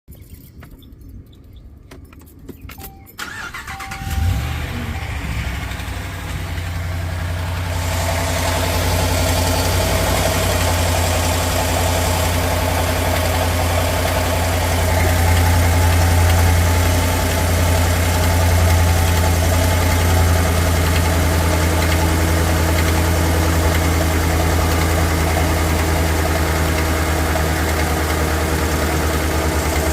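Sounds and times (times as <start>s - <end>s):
engine cranking and starting: 2.6s - 29.9s
engine idling: 3.2s - 29.9s
engine lifter tapping: 8.0s - 29.9s.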